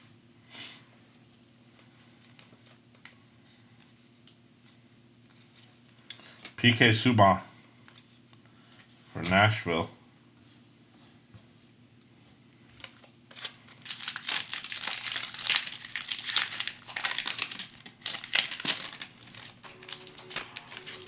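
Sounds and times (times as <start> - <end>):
plastic wrapper crinkling and tearing: 12.8 - 21.0.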